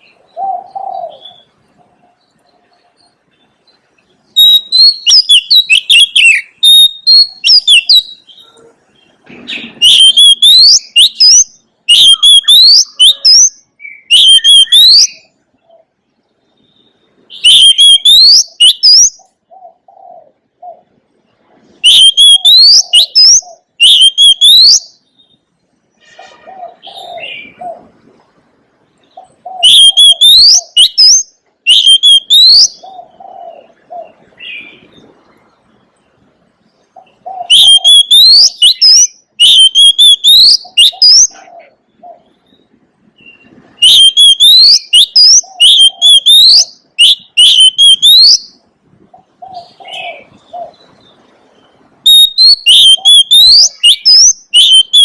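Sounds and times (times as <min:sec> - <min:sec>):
bird singing rising whistles: 0:04.4 - 0:08.3, 0:09.6 - 0:15.3, 0:17.3 - 0:19.2, 0:21.8 - 0:25.0, 0:29.4 - 0:32.8, 0:37.5 - 0:41.4, 0:43.2 - 0:48.6, 0:52.0 - 0:55.0.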